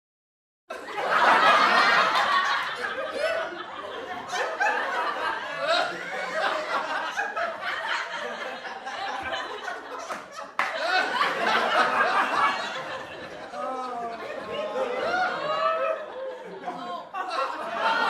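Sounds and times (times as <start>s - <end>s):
people laughing: 0.7s - 18.0s.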